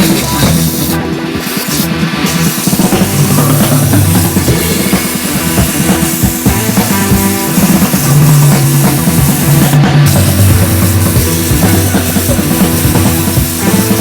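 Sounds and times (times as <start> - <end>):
rock music with drums: 0.0 - 14.0.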